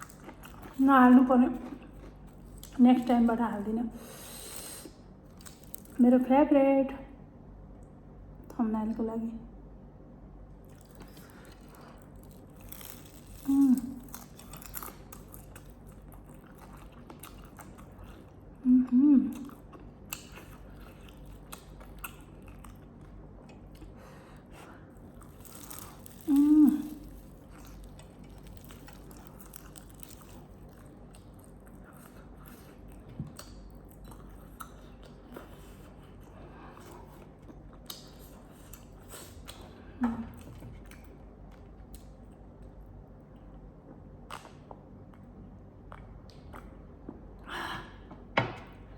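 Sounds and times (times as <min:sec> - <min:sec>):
person chewing food: 0:00.0 - 0:00.8, 0:10.6 - 0:18.6, 0:19.3 - 0:47.4.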